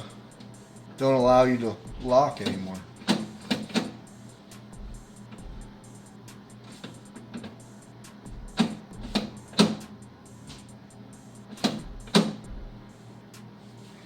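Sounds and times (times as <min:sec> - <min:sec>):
door lock clicking: 0:02.4 - 0:04.0.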